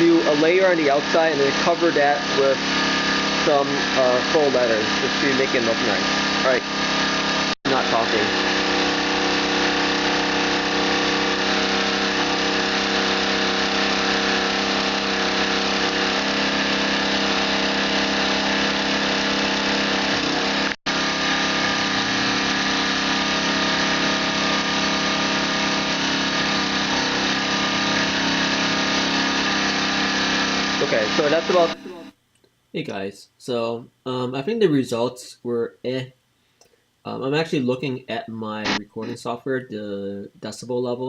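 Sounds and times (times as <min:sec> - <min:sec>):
small petrol engine running: 0:00.0 - 0:32.1.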